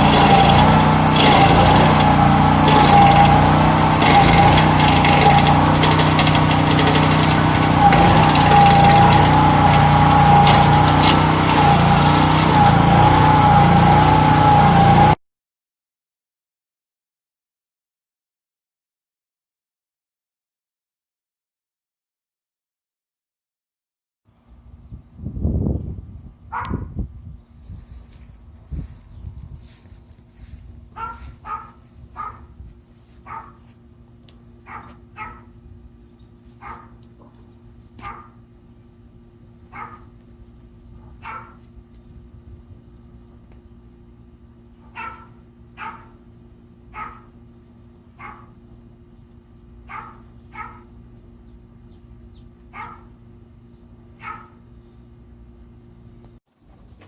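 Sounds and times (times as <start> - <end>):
small engine running with whine: 0.0 - 15.2, 27.6 - 57.0
dog barking: 26.5 - 26.9, 31.0 - 32.5, 33.2 - 33.6, 34.7 - 35.5, 36.6 - 37.0, 38.0 - 38.4, 39.7 - 40.1, 41.2 - 41.6, 44.8 - 46.2, 46.9 - 47.3, 48.2 - 48.5, 49.9 - 50.9, 52.7 - 53.1, 54.2 - 54.6.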